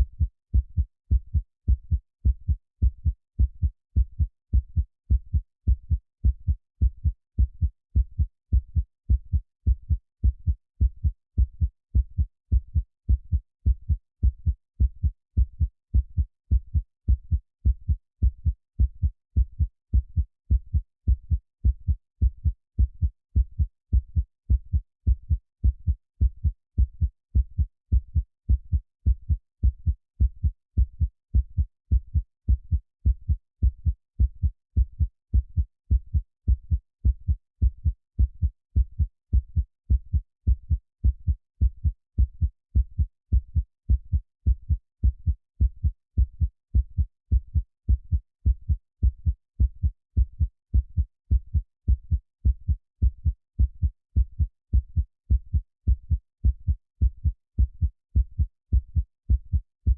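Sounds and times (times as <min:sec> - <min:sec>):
heartbeat thumps: 0:00.0 - 0:59.9.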